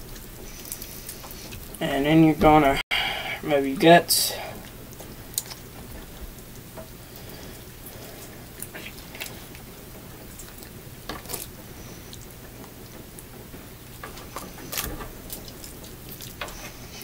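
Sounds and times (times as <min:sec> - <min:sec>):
steady low hum: 0:00.0 - 0:17.0
wet clicks and squelches: 0:04.6 - 0:05.6.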